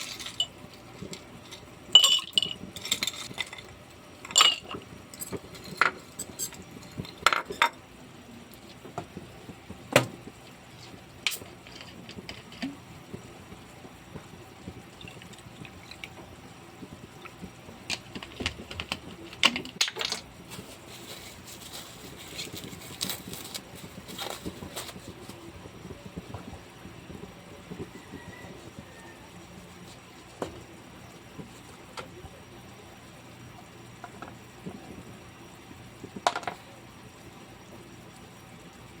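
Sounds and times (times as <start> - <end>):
utensils clinking against dishes: 0.0 - 7.8
liquid sounds: 0.0 - 31.9.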